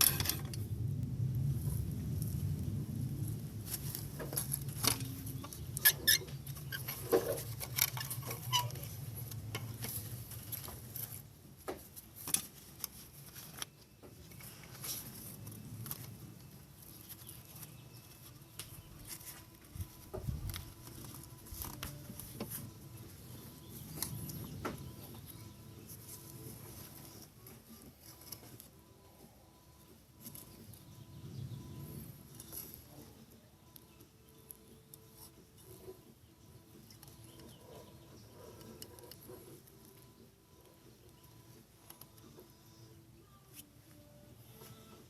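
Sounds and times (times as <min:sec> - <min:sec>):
hand tools clinking: 0:00.0 - 0:00.6
low hum: 0:00.0 - 0:11.2.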